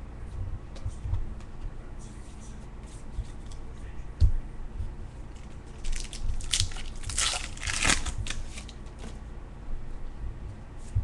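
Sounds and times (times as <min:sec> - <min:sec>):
wrappers rustling and crinkling: 0:05.8 - 0:08.8.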